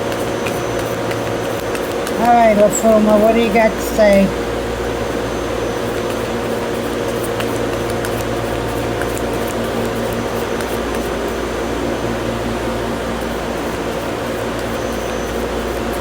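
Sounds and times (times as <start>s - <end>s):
ventilation hum and hiss: 0.0s - 16.0s.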